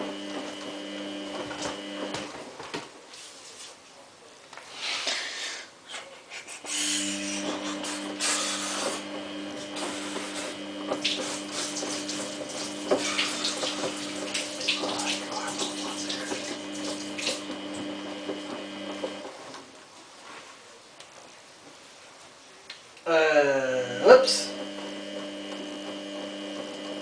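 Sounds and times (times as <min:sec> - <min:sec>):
inlet valve electrical hum: 0:00.0 - 0:03.6, 0:05.0 - 0:20.2, 0:20.9 - 0:27.0
water rushing and splashing: 0:11.1 - 0:17.7.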